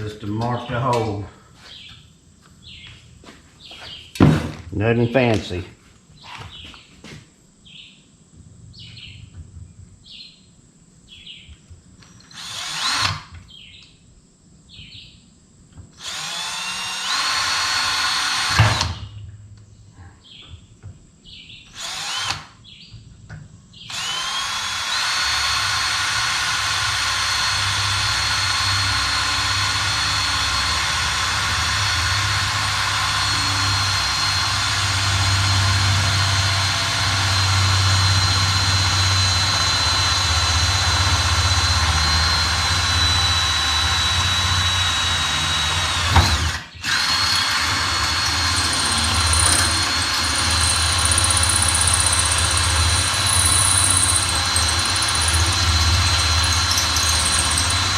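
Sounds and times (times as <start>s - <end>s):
electric drill whining: 12.0s - 13.4s, 16.0s - 19.1s, 21.7s - 22.6s, 23.9s - 57.9s.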